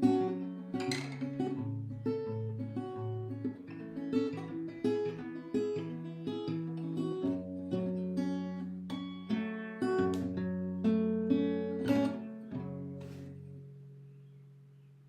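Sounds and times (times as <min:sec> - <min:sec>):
acoustic guitar strumming chords: 0:00.0 - 0:14.3.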